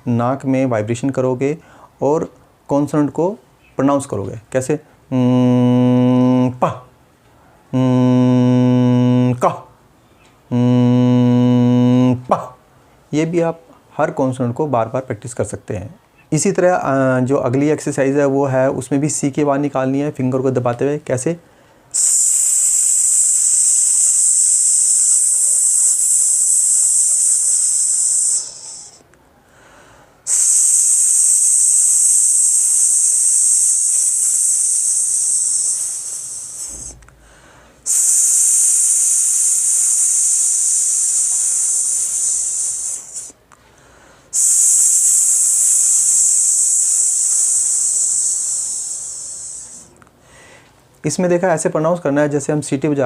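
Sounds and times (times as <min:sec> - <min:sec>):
man breathing: 0:01.6 - 0:02.0, 0:21.4 - 0:50.8
man hissing through teeth: 0:21.9 - 0:29.1, 0:30.2 - 0:43.5, 0:44.3 - 0:50.5.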